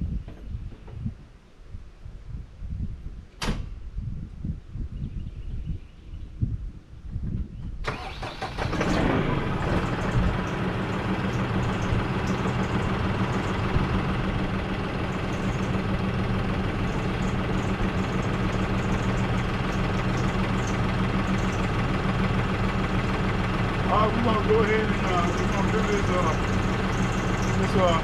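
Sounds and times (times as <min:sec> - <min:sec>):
diesel engine cranking and idling: 0:07.8 - 0:28.0.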